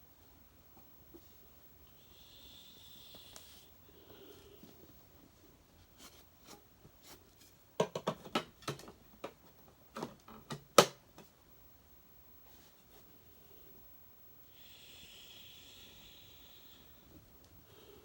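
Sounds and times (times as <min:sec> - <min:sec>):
plastic parts clicking and knocking: 0:07.8 - 0:11.0.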